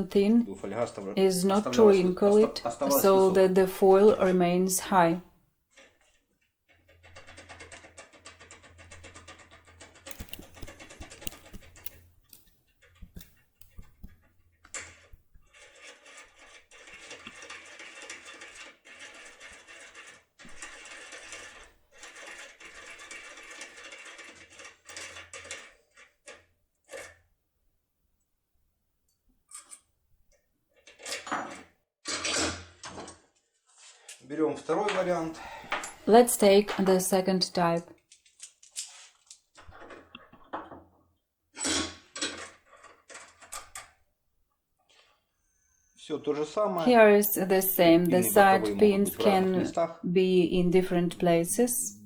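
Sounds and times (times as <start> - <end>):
lockpick rattling in a lock: 5.8 - 14.0, 14.7 - 27.2
sharp metal clicks: 7.3 - 13.8.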